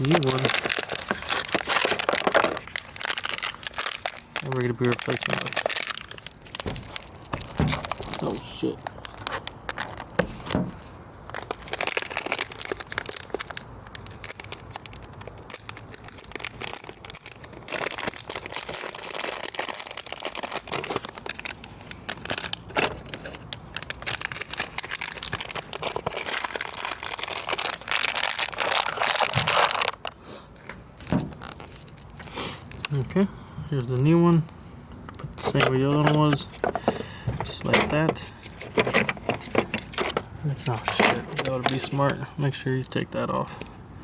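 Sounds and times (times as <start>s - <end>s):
plastic packaging crinkling: 0.0s - 30.2s, 31.0s - 34.5s.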